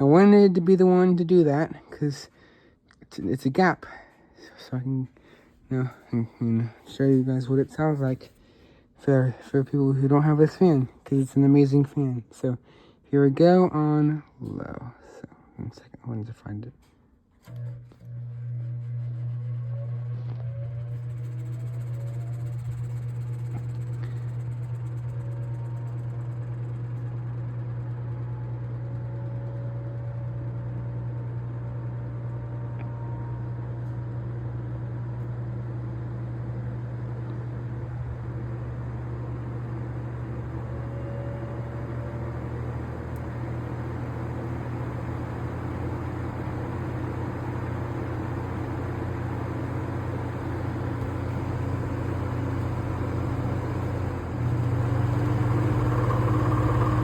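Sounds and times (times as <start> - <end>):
box fan motor humming: 17.4 - 57.0.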